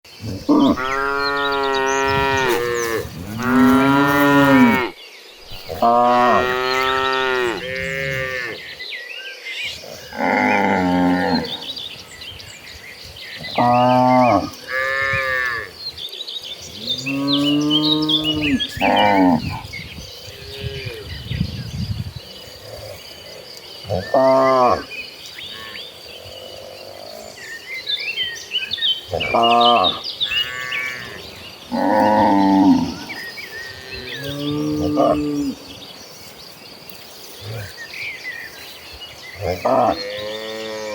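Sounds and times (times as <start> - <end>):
cattle mooing: 0.4 - 4.9, 5.5 - 8.6.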